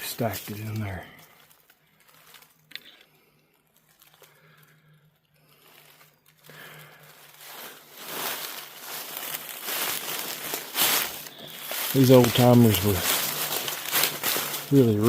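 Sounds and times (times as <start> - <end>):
crunching and rustling: 0.0 - 15.0.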